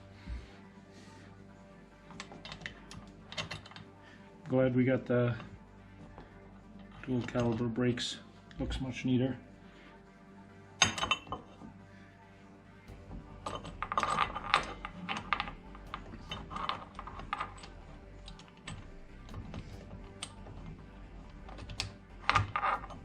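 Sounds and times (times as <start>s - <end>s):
metal parts and tools clinking: 2.1s - 3.9s, 6.8s - 7.7s, 10.8s - 11.7s, 12.9s - 23.0s.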